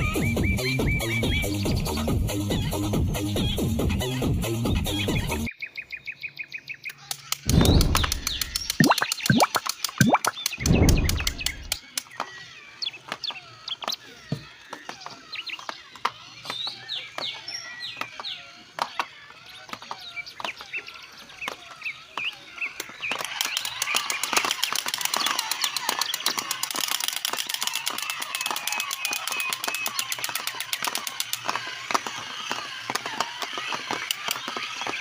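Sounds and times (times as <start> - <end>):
birds chirping: 0.0 - 26.8, 27.7 - 35.0
sharp clicks: 6.8 - 12.3, 22.2 - 35.0
low thump: 7.5 - 8.4.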